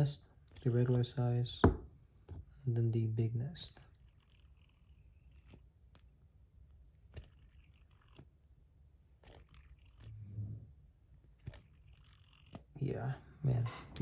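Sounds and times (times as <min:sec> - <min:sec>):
fidget spinners clicking and tapping: 0:03.6 - 0:06.4, 0:07.0 - 0:08.4.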